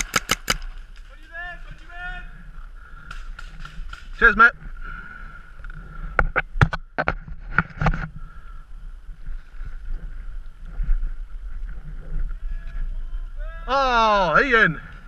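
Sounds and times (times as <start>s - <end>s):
sharp pops: 0.0s - 0.7s
wind noise on microphone: 6.0s - 13.7s.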